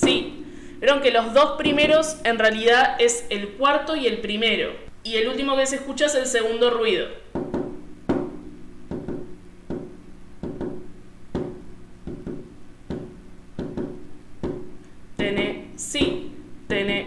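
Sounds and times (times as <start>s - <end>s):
heartbeat gallop rhythm: 0.0s - 3.2s, 7.3s - 17.0s
faint steady hum: 0.0s - 17.0s.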